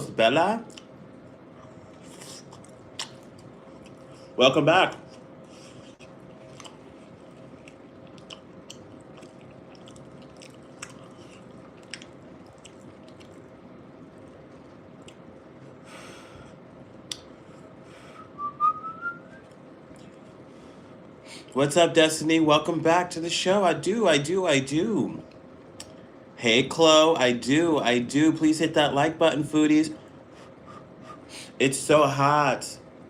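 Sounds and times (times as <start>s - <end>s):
chewing food: 1.6s - 4.4s, 5.0s - 15.4s, 19.4s - 20.4s
wet mouth clicks: 2.2s - 4.0s, 7.6s - 13.4s.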